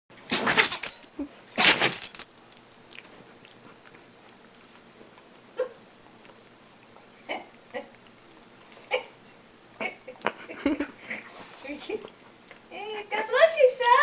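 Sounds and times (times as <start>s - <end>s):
dog sneezing: 0.3s - 1.0s, 1.6s - 2.3s.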